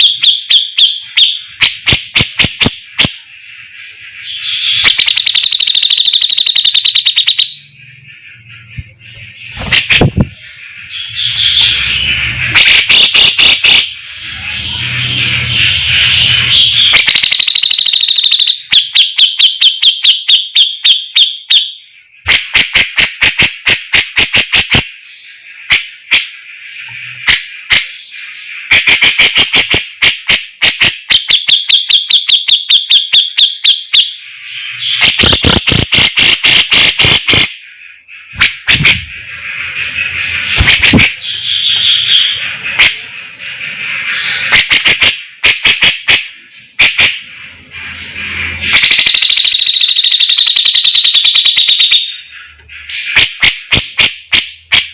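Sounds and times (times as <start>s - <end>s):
bird singing with trills: 0.0s - 22.4s, 24.9s - 29.3s, 31.1s - 44.7s, 46.4s - 53.2s.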